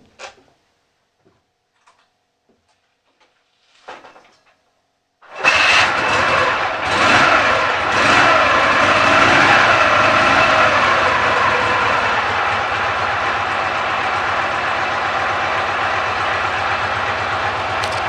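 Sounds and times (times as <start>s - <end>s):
motorcycle engine starting and running: 5.3s - 18.0s.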